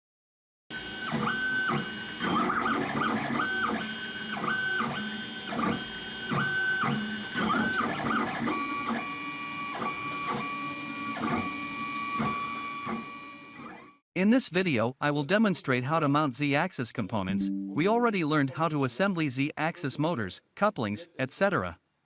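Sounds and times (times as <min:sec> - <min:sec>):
stepper motors whining: 0:00.8 - 0:14.0.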